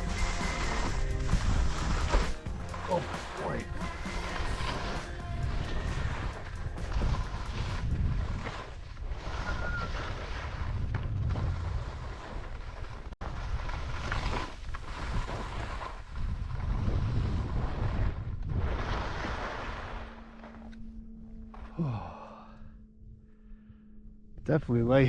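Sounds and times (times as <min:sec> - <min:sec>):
skis scraping through snow: 0:00.0 - 0:20.0
wind buffeting microphone: 0:00.8 - 0:20.2.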